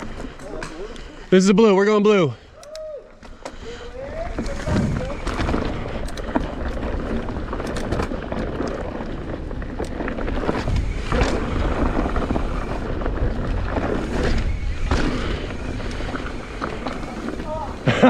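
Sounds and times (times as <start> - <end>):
bike tyres rolling over dirt: 0.0 - 1.7, 2.4 - 18.0
bike rattling and knocking: 3.2 - 18.0
wind buffeting microphone: 3.6 - 18.0.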